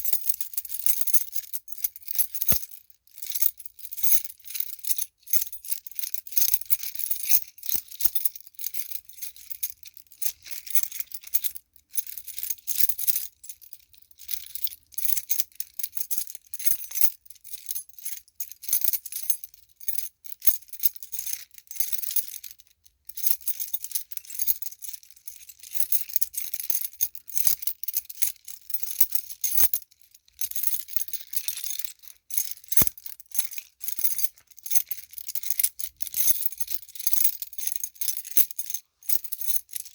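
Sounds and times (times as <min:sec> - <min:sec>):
metal keys jangling: 0:00.0 - 0:05.9, 0:23.8 - 0:39.9.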